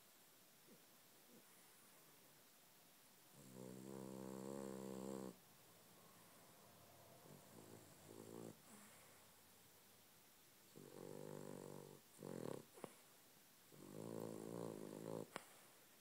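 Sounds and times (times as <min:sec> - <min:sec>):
dog snoring: 0:03.3 - 0:05.4, 0:07.2 - 0:09.2, 0:10.7 - 0:13.0, 0:13.7 - 0:15.6.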